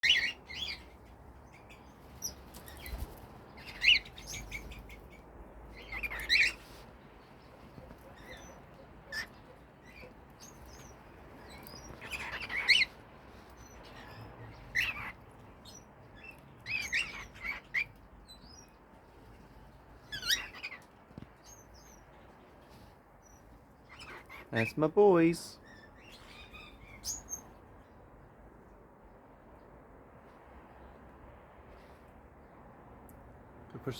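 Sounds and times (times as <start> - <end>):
cockatiels chirping: 0.0 - 5.2, 5.8 - 6.8, 7.7 - 18.7, 20.1 - 22.0, 23.9 - 24.7.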